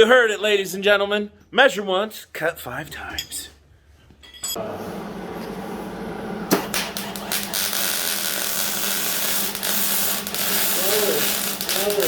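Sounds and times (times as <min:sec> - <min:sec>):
power tool cutting pipe: 0:06.7 - 0:12.0.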